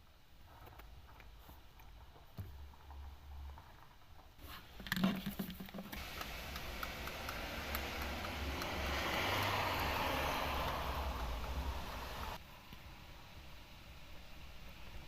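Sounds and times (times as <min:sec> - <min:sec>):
rain hissing: 0:05.9 - 0:15.0.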